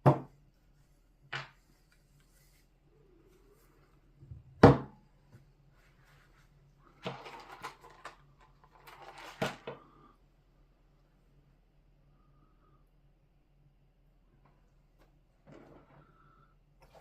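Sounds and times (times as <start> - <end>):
objects clattering on hard surface: 7.0 - 9.8.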